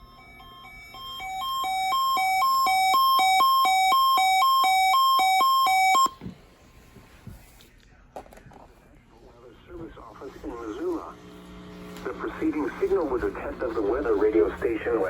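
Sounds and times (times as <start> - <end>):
two-tone electronic beeping alarm: 0.0 - 6.2.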